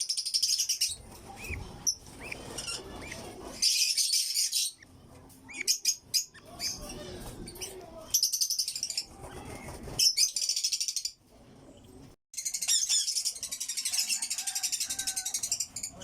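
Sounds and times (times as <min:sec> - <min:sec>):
lovebirds chattering: 0:00.0 - 0:11.2.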